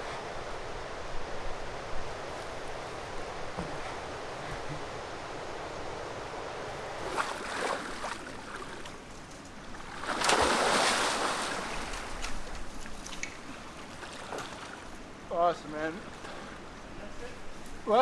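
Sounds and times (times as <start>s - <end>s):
flowing river water: 0.0s - 18.0s
big splash into water: 9.8s - 12.6s.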